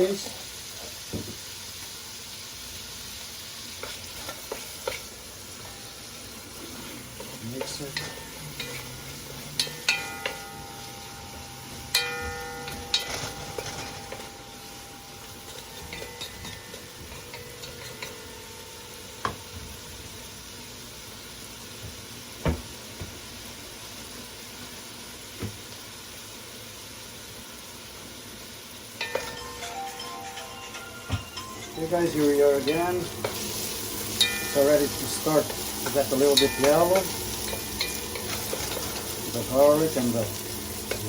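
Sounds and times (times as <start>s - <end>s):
vegetables sizzling in oil: 0.0s - 41.0s
spoon clinking against pot: 7.2s - 9.0s, 9.6s - 18.4s, 29.0s - 33.4s, 34.1s - 39.1s.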